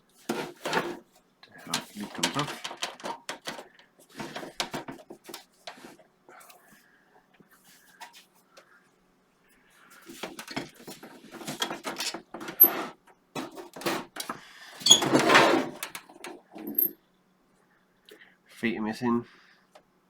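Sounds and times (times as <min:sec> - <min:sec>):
loud scrape on casing: 0:11.3 - 0:16.0.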